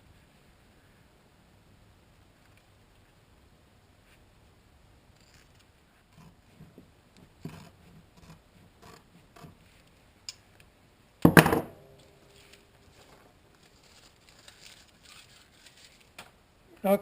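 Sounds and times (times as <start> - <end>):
duct tape handling and cutting: 13.5 - 16.4.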